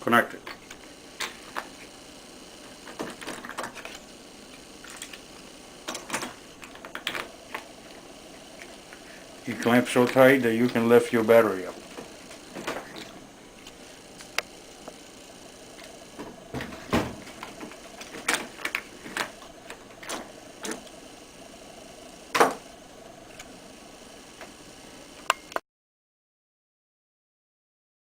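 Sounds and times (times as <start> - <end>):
battery terminal connectors clicking: 12.0 - 15.0
heavy thumps: 15.9 - 18.4.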